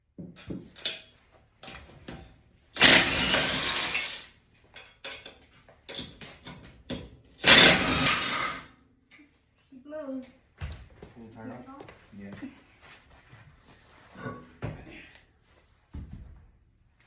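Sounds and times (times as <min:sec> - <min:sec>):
tools clicking and knocking: 0:00.2 - 0:08.5
power tool bursts: 0:02.8 - 0:04.3, 0:07.4 - 0:08.7.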